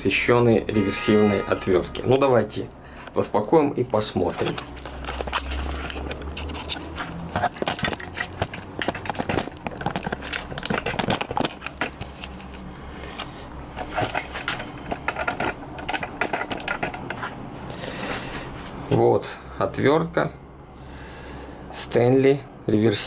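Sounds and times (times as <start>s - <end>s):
packaging crackling and scraping: 4.0s - 17.4s.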